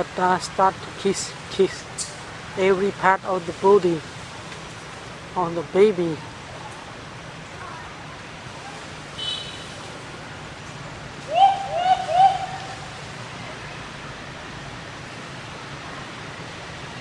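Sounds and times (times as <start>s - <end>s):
steady outdoor hiss: 0.0s - 17.0s
hoot-like animal calls: 11.3s - 12.9s.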